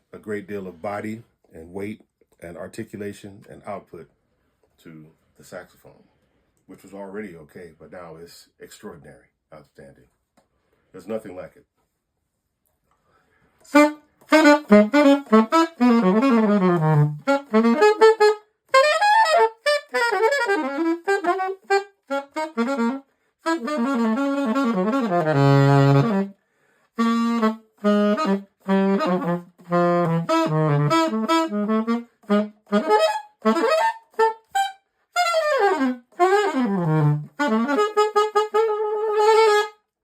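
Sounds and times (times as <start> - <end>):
solo jazz saxophone: 13.6 - 40.0.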